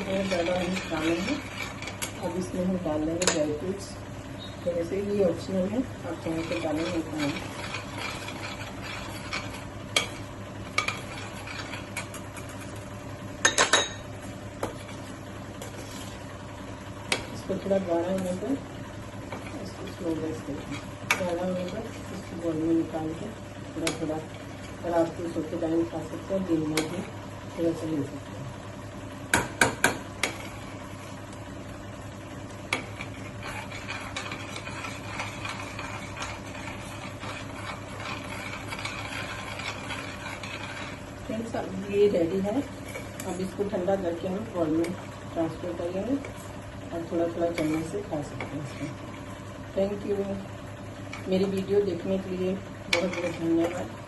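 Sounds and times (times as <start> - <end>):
spoon scraping metal pan: 0.0 - 2.5, 6.1 - 12.8, 32.7 - 41.7, 47.5 - 49.0, 52.9 - 53.8
spoon stirring thick mixture: 0.0 - 3.6, 4.8 - 13.4, 14.0 - 27.8, 29.5 - 50.3, 51.0 - 54.0.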